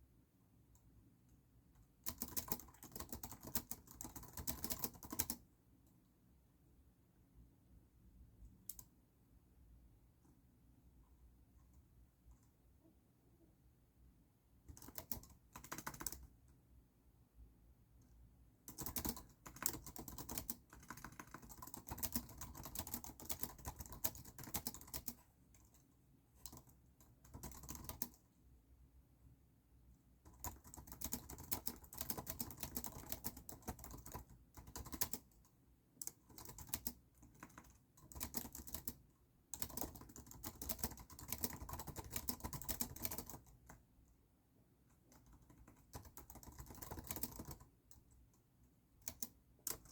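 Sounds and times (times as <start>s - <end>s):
computer keyboard typing: 2.0s - 5.5s, 14.7s - 16.3s, 18.6s - 25.8s, 26.4s - 28.2s, 30.2s - 43.8s, 45.1s - 48.2s, 49.0s - 49.9s.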